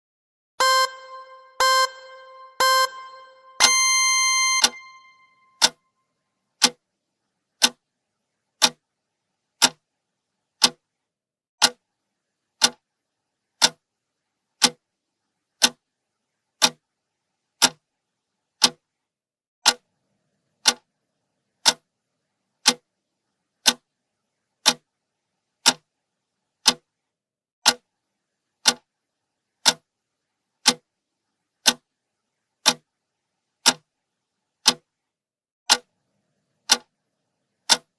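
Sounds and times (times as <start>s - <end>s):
clock-style ticking: 0.6s - 5.9s, 6.6s - 6.8s, 7.6s - 7.8s, 8.6s - 8.8s, 9.6s - 9.8s, 10.6s - 10.8s, 11.6s - 11.8s, 12.6s - 12.8s, 13.6s - 13.8s, 14.6s - 14.8s, 15.6s - 15.8s, 16.6s - 16.8s, 17.6s - 17.8s, 18.6s - 18.8s, 19.6s - 19.9s, 20.6s - 20.9s, 21.6s - 21.9s, 22.6s - 22.8s, 23.6s - 23.9s, 24.6s - 24.8s, 25.6s - 25.8s, 26.6s - 26.9s, 27.6s - 27.9s, 28.6s - 28.9s, 29.6s - 29.9s, 30.6s - 30.9s, 31.6s - 31.8s, 32.6s - 32.8s, 33.6s - 33.9s, 34.6s - 34.9s, 35.7s - 35.9s, 36.7s - 36.9s, 37.6s - 37.9s.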